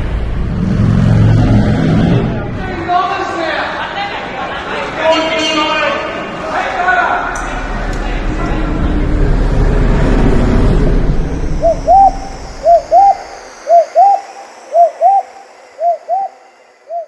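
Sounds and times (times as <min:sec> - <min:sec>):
loud rushing noise: 0:00.0 - 0:03.7, 0:06.1 - 0:17.0
owl hooting: 0:11.4 - 0:17.0
faint high wavering hiss: 0:11.5 - 0:17.0.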